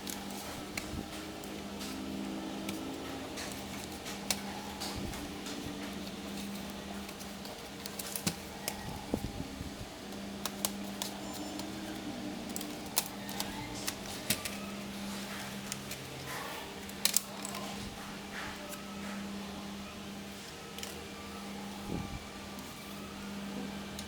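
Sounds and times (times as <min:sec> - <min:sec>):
clicks from laptop parts: 0:00.0 - 0:09.2, 0:10.1 - 0:17.8.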